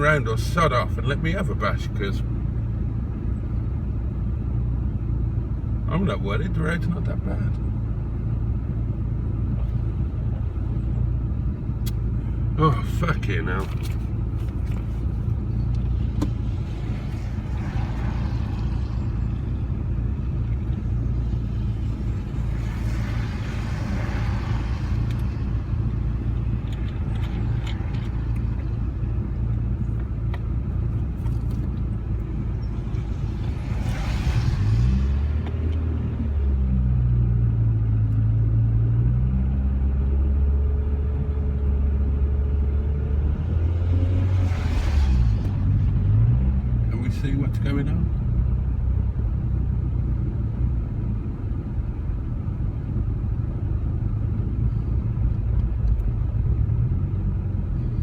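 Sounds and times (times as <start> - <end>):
car engine rumble inside cabin: 0.0 - 58.0
rushing road noise: 0.0 - 58.0.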